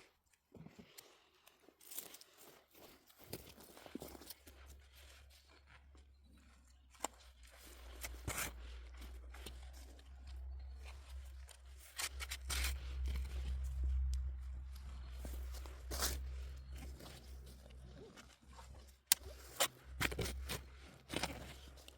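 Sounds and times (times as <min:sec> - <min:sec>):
digging in soil: 0:00.0 - 0:21.9
steady low rumble: 0:08.8 - 0:18.0.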